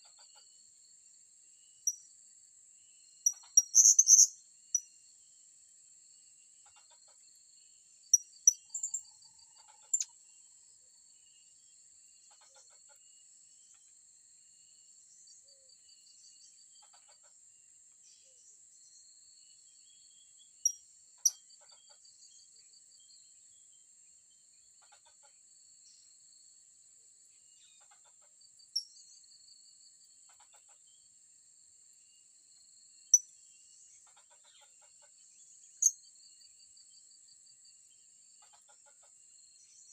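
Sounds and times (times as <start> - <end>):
insect drone with trill: 0.6 - 5.5.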